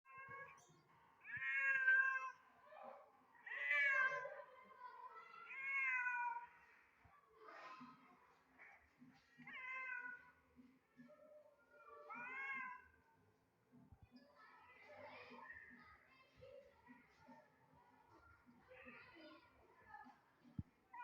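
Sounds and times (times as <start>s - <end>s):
cats yowling: 1.2s - 2.4s, 3.4s - 4.3s, 5.4s - 6.5s, 11.8s - 12.9s.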